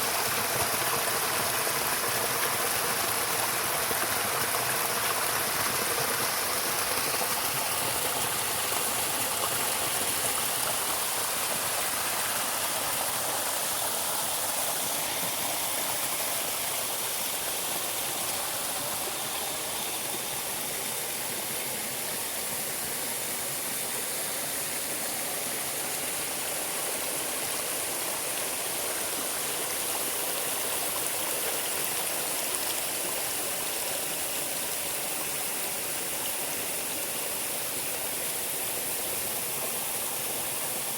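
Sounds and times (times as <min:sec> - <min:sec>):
stream rushing: 0:00.0 - 0:40.9.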